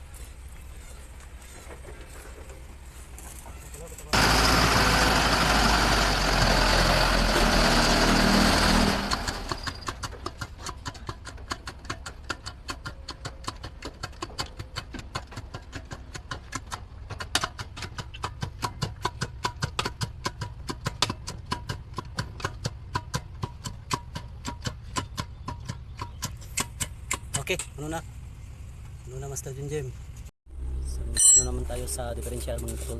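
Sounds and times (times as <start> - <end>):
engine running loudly: 4.1 - 9.7.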